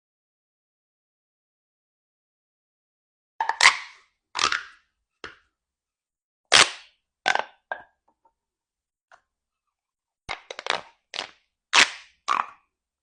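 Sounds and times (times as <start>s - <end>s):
plastic toy tube popping: 3.4s - 5.5s, 6.5s - 8.2s, 10.3s - 12.7s.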